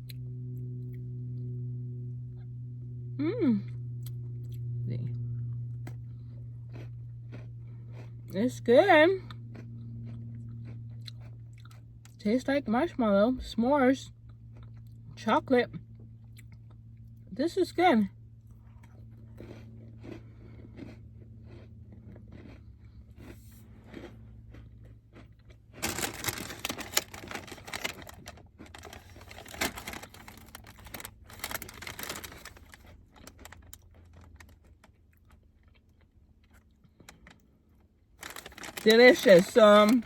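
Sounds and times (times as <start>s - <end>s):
low hum: 0.0s - 23.5s, 24.2s - 34.9s, 38.2s - 40.0s
cookie being chewed: 5.4s - 8.6s, 9.2s - 12.2s, 14.1s - 15.2s, 15.8s - 17.3s, 18.4s - 40.0s
plastic packaging crinkling: 25.8s - 34.6s, 38.2s - 40.0s.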